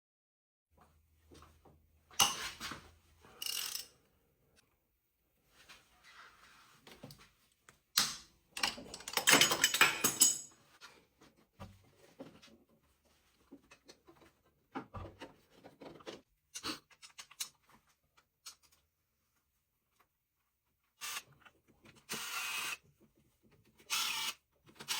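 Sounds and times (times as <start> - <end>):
clicks and knocks of metal parts: 3.4 - 3.9, 7.7 - 10.6
dense clattering of tools: 8.6 - 10.6.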